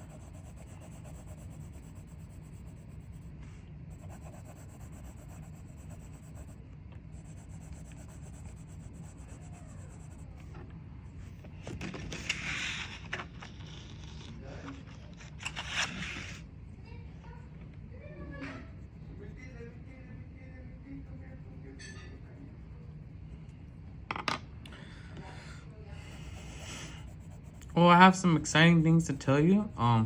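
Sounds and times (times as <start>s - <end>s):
colouring tool scratching on paper: 0.0s - 3.3s, 3.9s - 10.5s, 26.0s - 30.0s
steady low hum: 0.0s - 30.0s.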